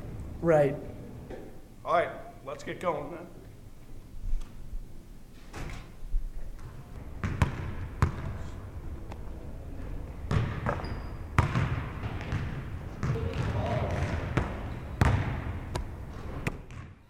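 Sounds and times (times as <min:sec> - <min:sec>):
ball bouncing on a hard floor: 0:10.3 - 0:17.0.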